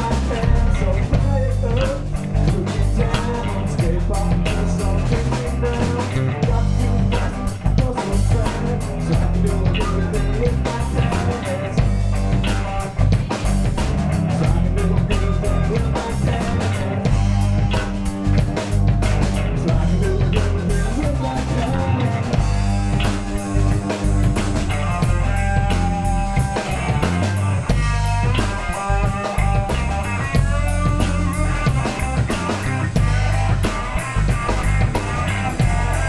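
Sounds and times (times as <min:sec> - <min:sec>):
bass guitar: 0:00.0 - 0:36.0
drum kit: 0:00.0 - 0:36.0
guitar: 0:00.0 - 0:36.0.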